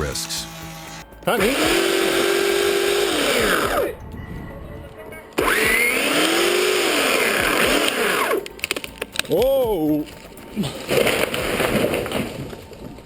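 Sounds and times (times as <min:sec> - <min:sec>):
chainsaw revving: 0:00.0 - 0:03.9, 0:05.4 - 0:08.9.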